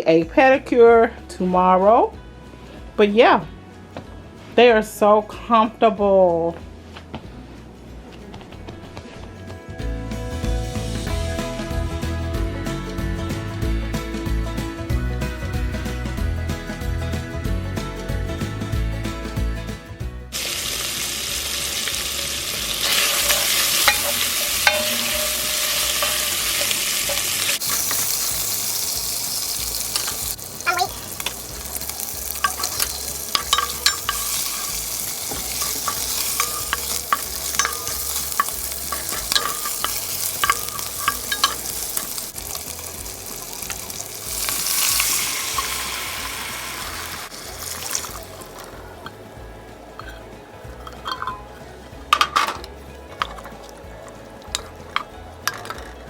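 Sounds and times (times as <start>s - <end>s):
food sizzling in frying pan: 20.3s - 50.2s
utensil knocking against pan: 23.0s - 28.1s.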